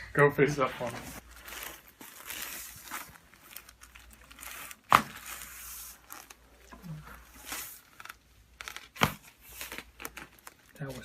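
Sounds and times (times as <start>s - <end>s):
rustling on treatment table: 0.5s - 11.0s.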